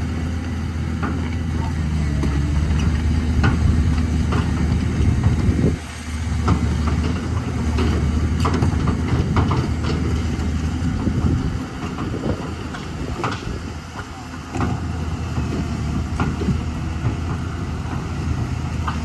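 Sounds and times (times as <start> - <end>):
excavator diesel engine running: 0.0 - 19.0
sharp knocks and clatter: 2.1 - 5.8, 6.4 - 19.0.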